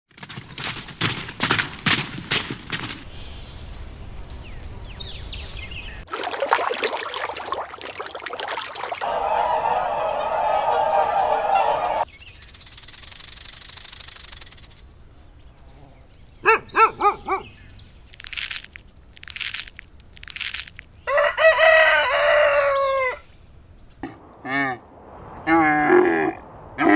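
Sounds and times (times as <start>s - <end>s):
repeated pulsed animal calls: 11.4s - 14.8s
animal sounds: 15.6s - 17.7s.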